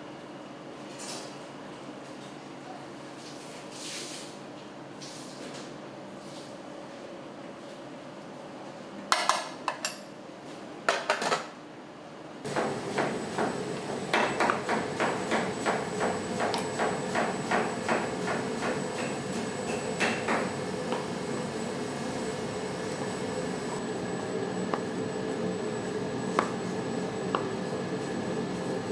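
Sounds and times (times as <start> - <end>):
kitchen equipment humming: 12.5 - 28.9.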